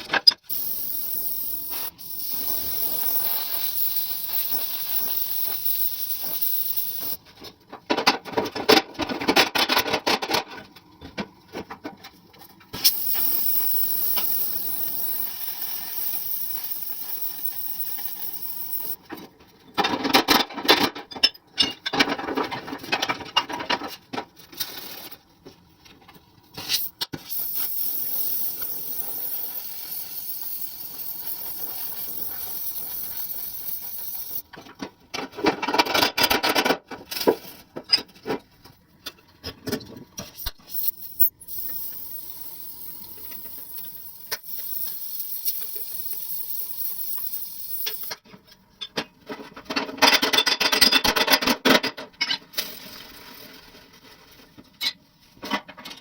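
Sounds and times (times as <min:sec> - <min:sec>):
compressed air hissing: 0:00.5 - 0:07.2, 0:12.8 - 0:19.0, 0:26.6 - 0:34.4.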